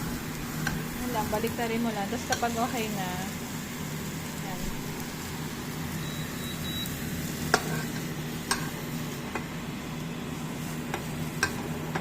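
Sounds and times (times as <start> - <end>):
leaves sizzling in a pan: 0.0 - 12.0
sharp clicks in a pan: 0.6 - 0.8, 2.3 - 2.6, 7.5 - 9.5, 10.9 - 12.0.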